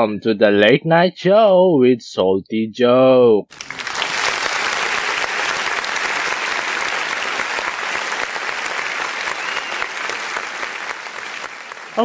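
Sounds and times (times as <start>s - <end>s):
audience applause: 3.5s - 12.0s.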